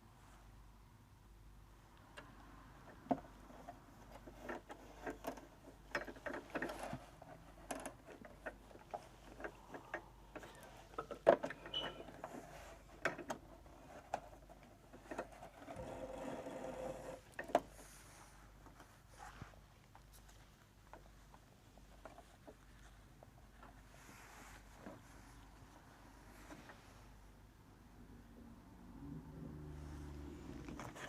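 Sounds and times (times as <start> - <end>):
sewing machine clicks and knocks: 4.1 - 13.4
sewing machine stitching: 15.0 - 17.6.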